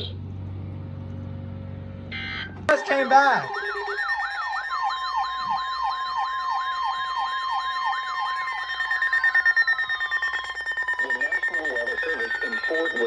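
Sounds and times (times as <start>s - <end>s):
electronic yelp siren: 2.1s - 13.0s
rapid high beeping: 2.7s - 13.0s
steady high tone: 2.7s - 13.0s.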